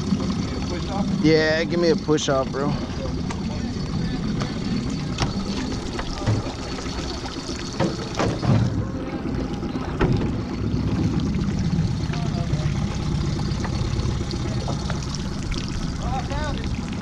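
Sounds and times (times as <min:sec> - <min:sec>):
outboard motor running: 0:00.0 - 0:17.0
sharp knocks and thumps: 0:07.8 - 0:08.8.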